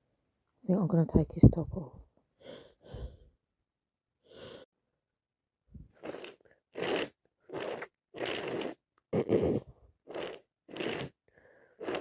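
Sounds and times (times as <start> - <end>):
gasping in-breaths: 2.4 - 3.4, 4.2 - 4.7, 11.2 - 11.9.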